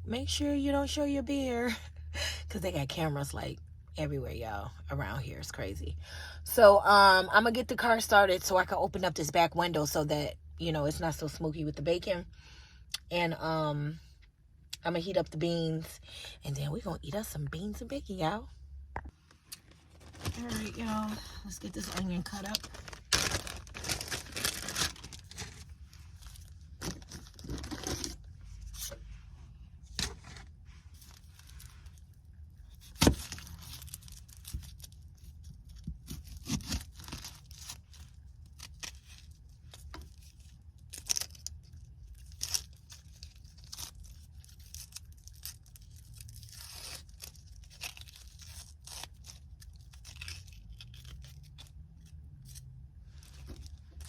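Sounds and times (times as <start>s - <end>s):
low steady hum: 0.0s - 54.0s
onion skin tearing and crinkling: 19.5s - 28.9s, 32.7s - 54.0s.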